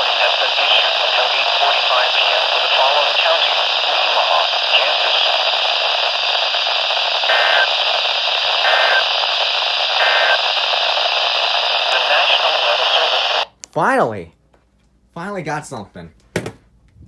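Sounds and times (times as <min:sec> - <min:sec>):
radio static hiss: 0:00.0 - 0:13.5
warbling data bursts: 0:06.7 - 0:12.4.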